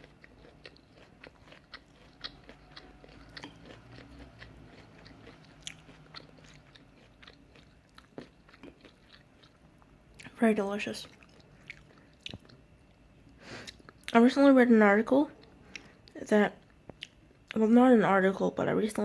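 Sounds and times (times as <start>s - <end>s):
chewing noodles: 0.0s - 10.3s, 11.0s - 12.7s.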